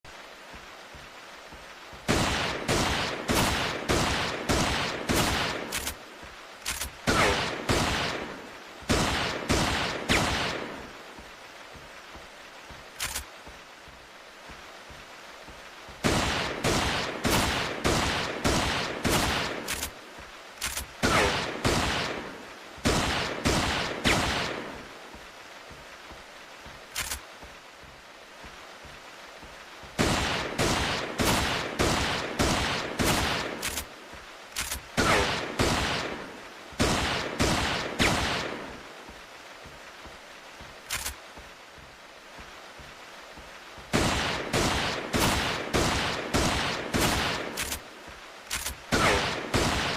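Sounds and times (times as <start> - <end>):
revolver gunshots with echo: 6.7 - 10.9, 16.0 - 19.9, 20.6 - 24.8, 30.0 - 33.9, 34.6 - 38.8, 43.9 - 47.8, 48.5 - 49.9.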